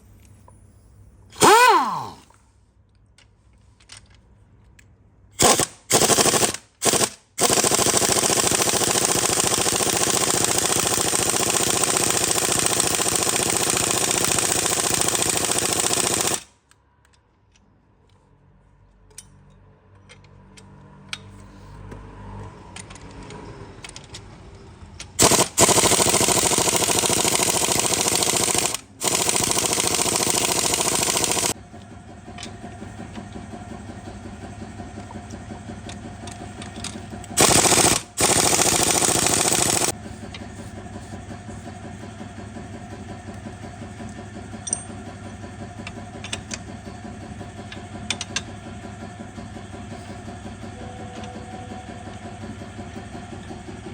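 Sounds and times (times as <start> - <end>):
air tool trigger bursts: 1.4 - 2.3, 5.4 - 16.5, 25.2 - 31.6, 37.4 - 40.0.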